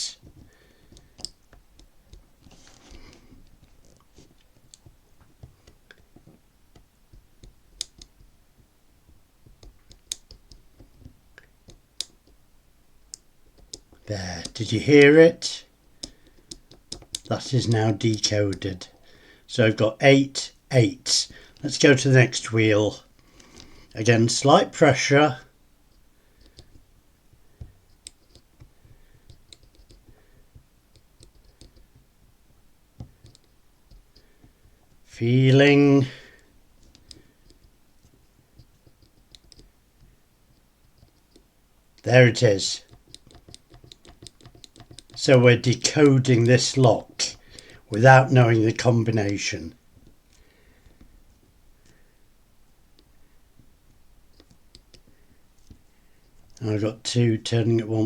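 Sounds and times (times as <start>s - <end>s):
combination lock wheels clicking: 42.8s - 45.3s.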